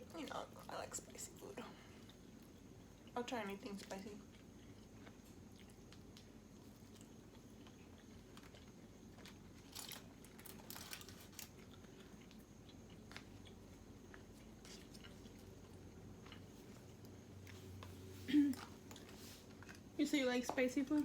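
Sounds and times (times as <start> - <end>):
person chewing crunchy food: 3.9 - 20.0.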